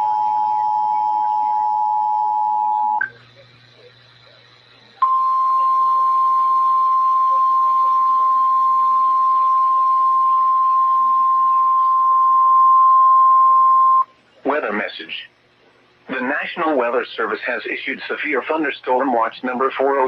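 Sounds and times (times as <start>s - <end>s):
steady alarm beep: 0.0s - 3.2s, 5.0s - 14.1s.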